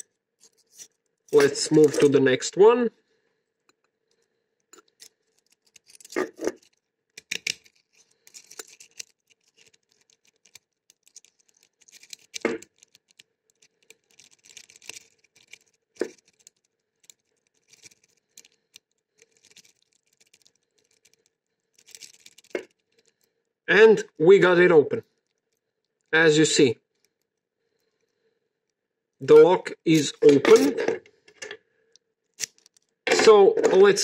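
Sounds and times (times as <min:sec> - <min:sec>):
metal key clicking and scraping in lock: 0:00.0 - 0:02.2, 0:04.7 - 0:21.1, 0:32.3 - 0:33.8.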